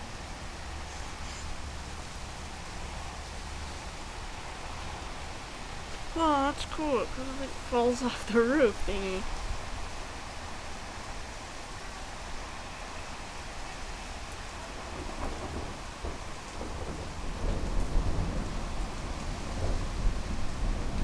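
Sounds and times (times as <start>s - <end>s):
heavy rain falling: 0.0s - 21.0s
thunder rumbling: 14.5s - 21.0s.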